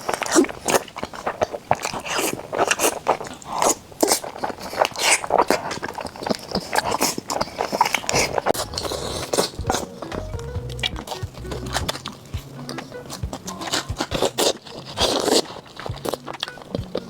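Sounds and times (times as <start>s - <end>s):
person chewing crunchy food: 0.0s - 17.0s.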